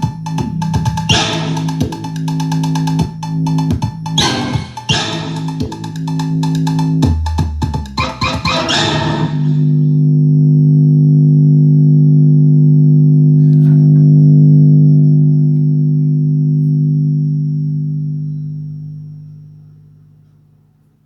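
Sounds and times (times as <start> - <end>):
song from portable speaker: 0.0 - 9.8
long deep steady tone: 0.0 - 20.2.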